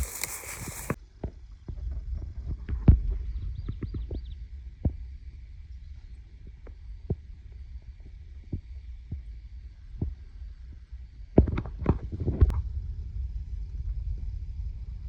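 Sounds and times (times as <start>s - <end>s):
footsteps through tall grass: 0.0s - 1.0s
wind rumble on microphone: 7.8s - 15.0s.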